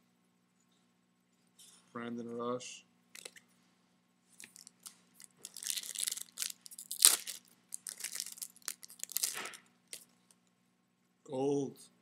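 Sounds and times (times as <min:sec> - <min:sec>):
foil wrapper tearing and crinkling: 0:04.4 - 0:10.0.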